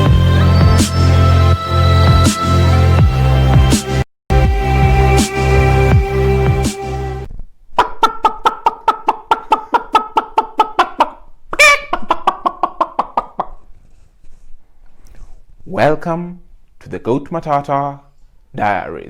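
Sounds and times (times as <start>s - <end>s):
music cue: 0.0s - 7.3s
chicken clucking: 7.8s - 13.6s
chicken squawk: 7.8s - 13.6s.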